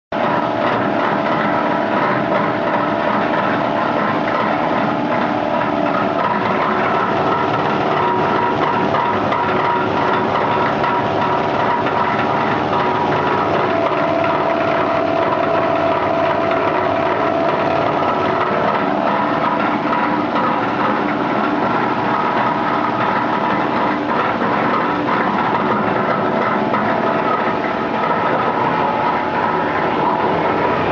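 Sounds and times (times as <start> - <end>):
machine whirring: 0.1 - 30.9.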